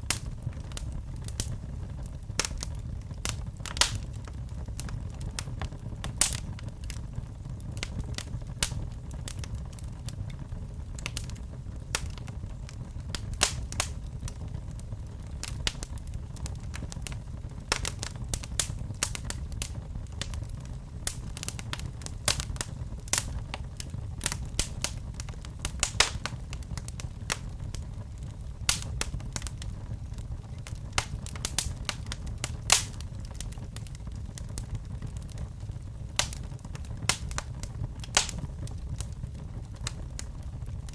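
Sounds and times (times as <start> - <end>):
fire crackling and popping: 0.0 - 40.9
low rumble of flames: 0.0 - 40.9.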